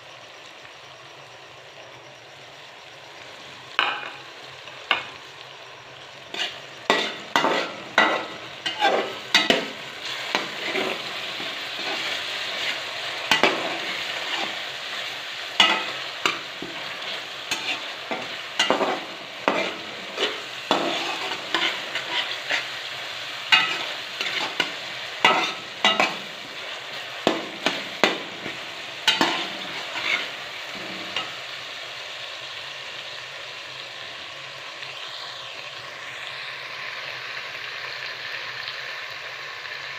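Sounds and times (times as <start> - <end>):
food sizzling in a pan: 0.0 - 39.9
spatula scraping a pan: 6.3 - 31.5.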